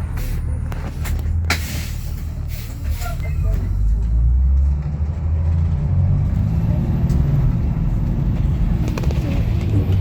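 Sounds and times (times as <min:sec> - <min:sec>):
bus engine rumbling: 0:00.0 - 0:10.0.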